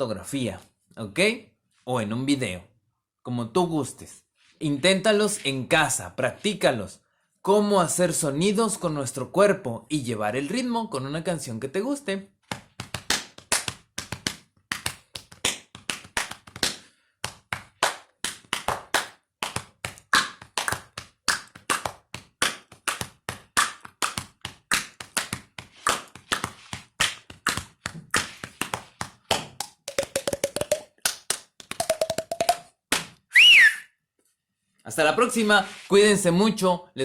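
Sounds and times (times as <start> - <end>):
hand claps and body slaps: 12.4 - 33.3
mouth clicks and cheek taps: 22.8 - 32.7.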